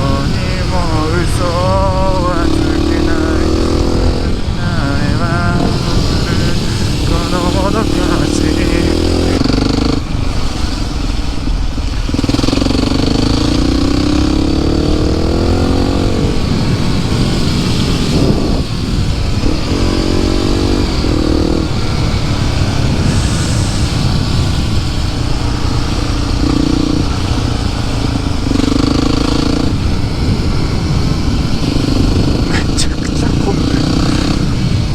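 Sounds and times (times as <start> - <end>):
motorcycle engine revving: 0.0 - 34.9
wind buffeting microphone: 0.0 - 34.9.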